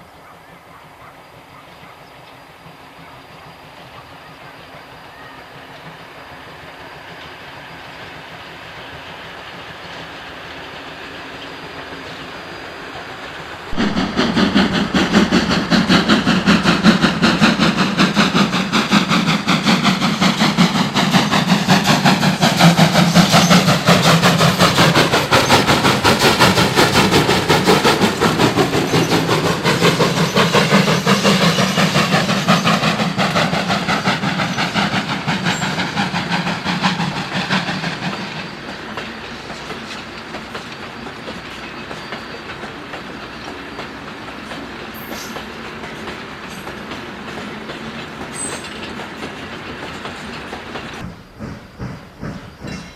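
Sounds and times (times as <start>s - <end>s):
steam locomotive exhaust beats: 0.0s - 52.9s.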